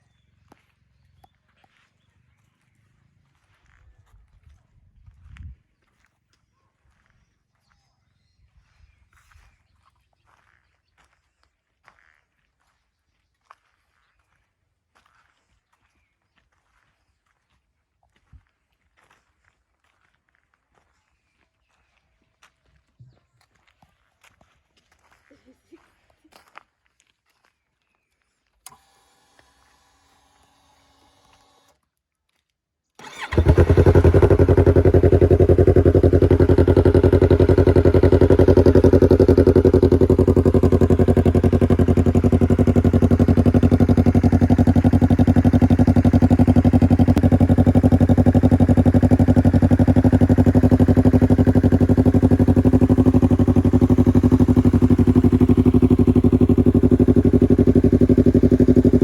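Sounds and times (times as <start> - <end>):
motorcycle engine starting and idling: 33.0 - 59.0.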